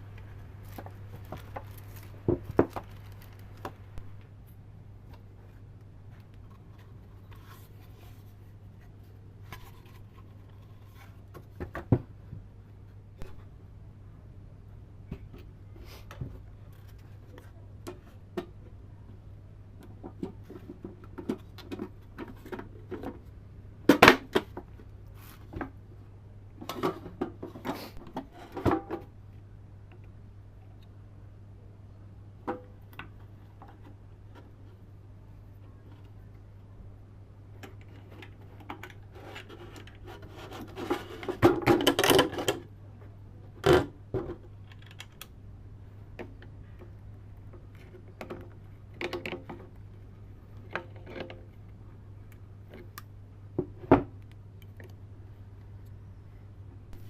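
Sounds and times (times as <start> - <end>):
steady low hum: 0.0 - 57.0
clicks and knocks of small parts: 43.6 - 45.3.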